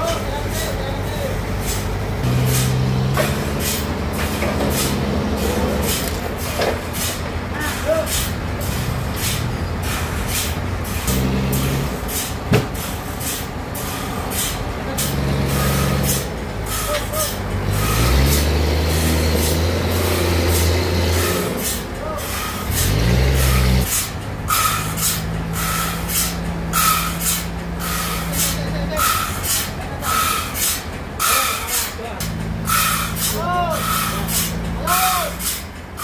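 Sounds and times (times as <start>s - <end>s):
large engine running: 0.0s - 36.0s
short hisses: 12.1s - 17.2s, 21.6s - 32.0s, 32.6s - 34.6s.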